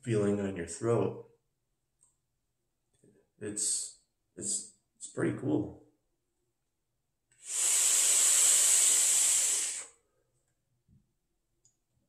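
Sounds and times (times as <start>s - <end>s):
person exhaling vape breath: 7.4s - 10.0s.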